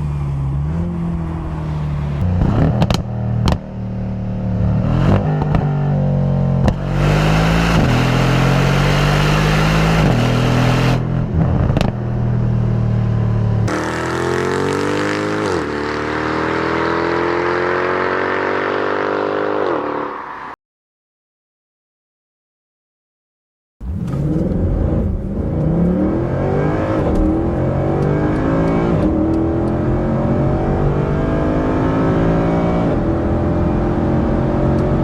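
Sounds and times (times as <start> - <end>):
car engine revving: 0.0 - 20.5, 23.8 - 35.0
exhaust cracks: 1.2 - 3.8, 11.2 - 12.4.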